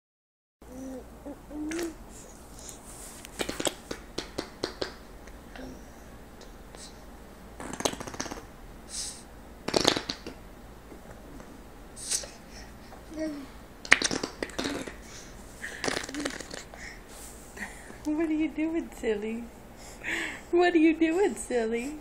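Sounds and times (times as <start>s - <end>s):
baby cooing: 0.7s - 2.0s
baby blowing raspberries: 0.7s - 2.7s, 15.7s - 17.0s.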